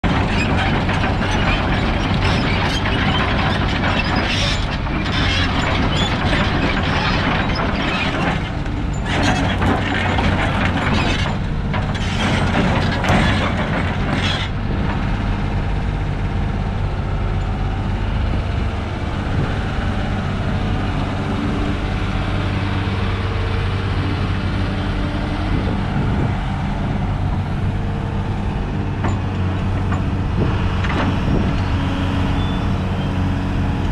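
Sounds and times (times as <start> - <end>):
heavy metallic clanking: 0.0 - 16.0, 27.2 - 31.8
excavator diesel engine running: 0.0 - 33.9.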